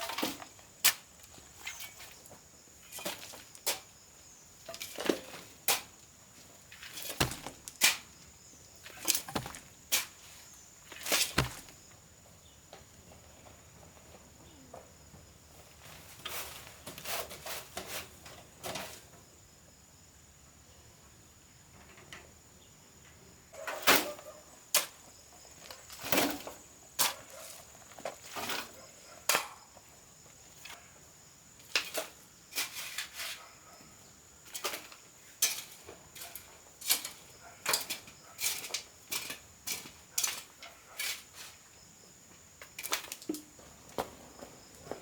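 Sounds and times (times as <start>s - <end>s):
wood knocks and taps: 7.2s - 7.8s, 8.9s - 9.7s, 11.3s - 11.8s.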